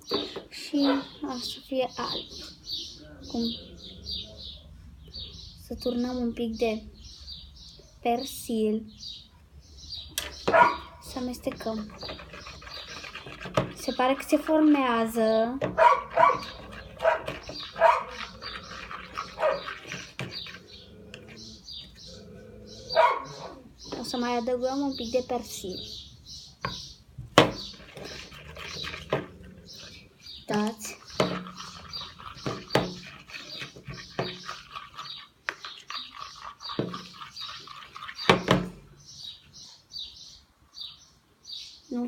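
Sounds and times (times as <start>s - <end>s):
small bird chirping: 0.0s - 42.0s
dog barking: 0.8s - 1.2s, 10.5s - 11.0s, 15.7s - 18.4s, 19.3s - 19.7s, 22.9s - 23.7s.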